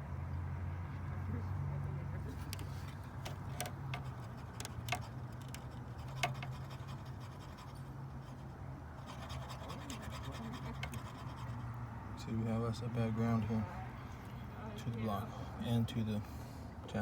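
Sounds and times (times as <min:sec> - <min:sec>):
probe scraping and clicking on metal: 0:02.4 - 0:11.7.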